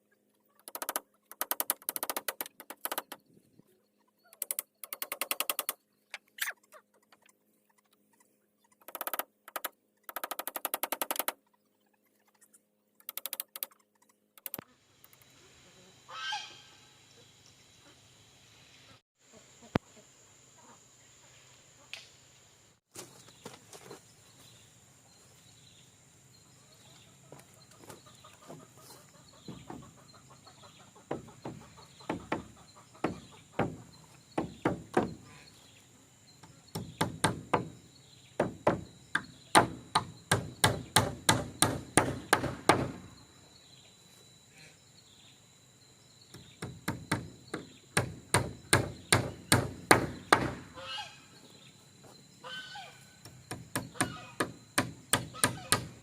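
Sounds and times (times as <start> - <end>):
hand tool striking wood: 38.4 - 43.0, 46.6 - 50.6, 53.5 - 56.0.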